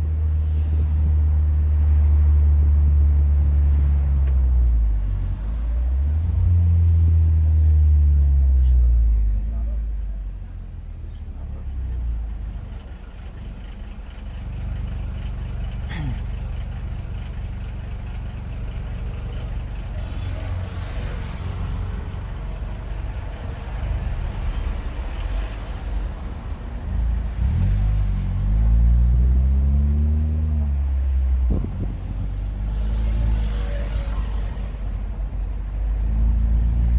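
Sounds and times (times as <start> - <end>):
car engine rumbling and revving: 0.0 - 36.9.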